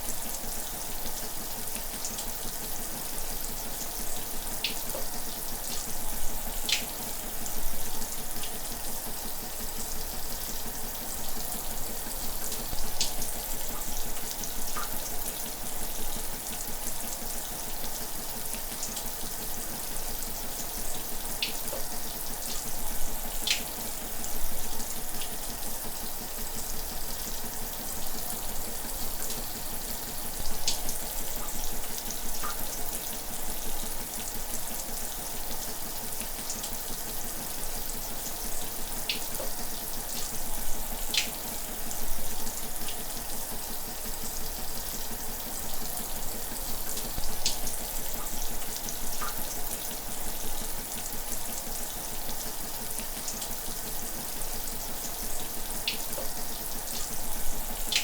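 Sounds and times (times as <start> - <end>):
shower running: 0.0 - 58.0.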